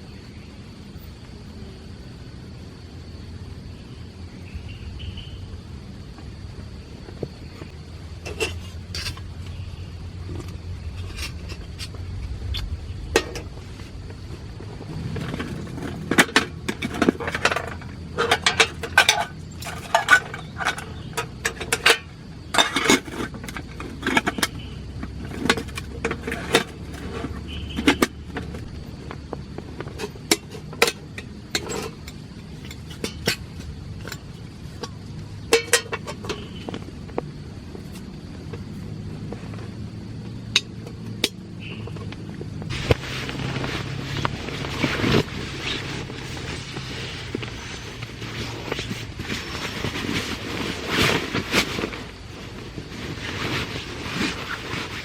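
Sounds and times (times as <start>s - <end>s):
metal utensils clinking: 15.0s - 24.5s.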